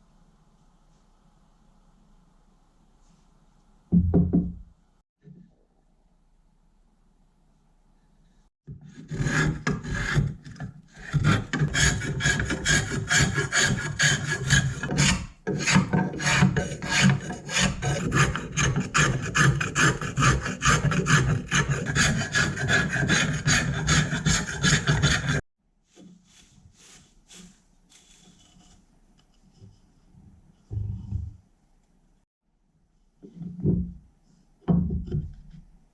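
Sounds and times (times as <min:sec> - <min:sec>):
hand file scraping metal: 0:08.9 - 0:25.4.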